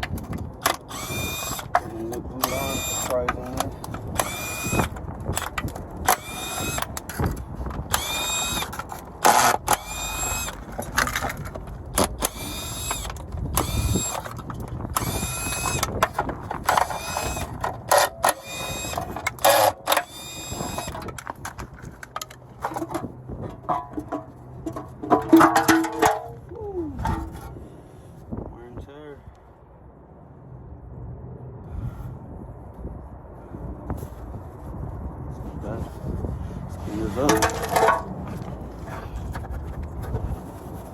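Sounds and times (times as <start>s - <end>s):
power tool whining: 0.6s - 3.2s, 3.8s - 11.2s, 12.0s - 21.2s.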